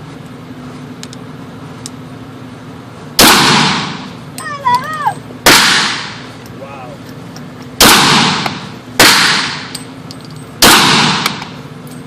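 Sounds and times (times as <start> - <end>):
pistol shot with echo: 3.2 - 4.1, 5.5 - 6.2, 7.8 - 9.7, 10.6 - 11.6.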